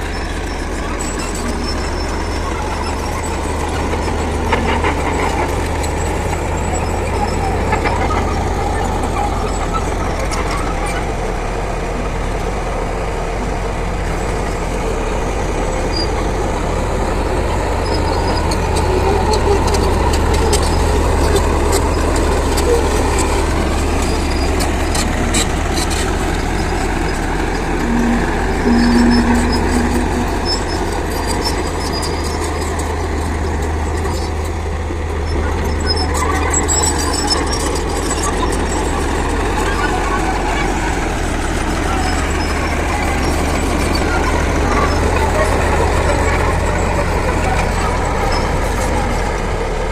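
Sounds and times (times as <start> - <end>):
diesel machine engine drone: 0.0 - 49.9
steady tone: 26.6 - 32.1.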